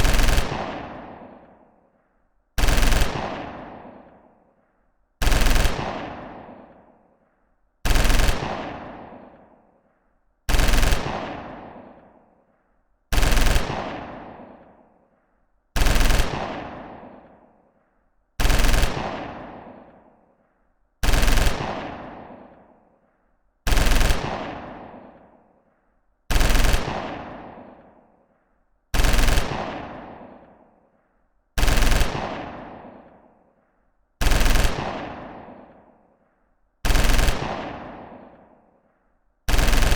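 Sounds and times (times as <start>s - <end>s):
machine gun bursts with echo: 0.0s - 1.8s, 2.6s - 4.5s, 5.2s - 7.0s, 7.8s - 9.7s, 10.5s - 12.4s, 13.1s - 15.0s, 15.8s - 17.6s, 18.4s - 20.2s, 21.0s - 22.8s, 23.7s - 25.5s, 26.3s - 28.1s, 28.9s - 30.8s, 31.6s - 33.4s, 34.2s - 36.2s, 36.8s - 38.8s, 39.5s - 39.9s.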